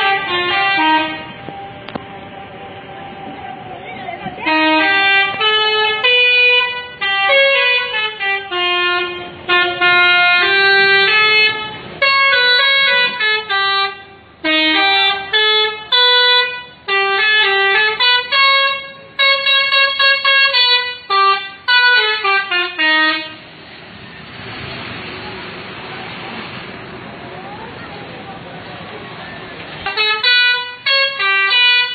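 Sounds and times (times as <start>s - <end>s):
multi-tone bus horn playing a tune: 0.0s - 3.1s, 4.2s - 23.7s, 29.7s - 31.9s.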